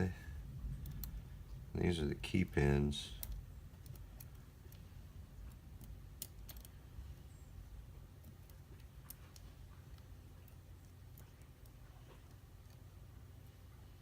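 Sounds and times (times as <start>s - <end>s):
small clicks of lock parts: 0.8s - 1.3s, 3.1s - 6.8s, 8.2s - 13.6s.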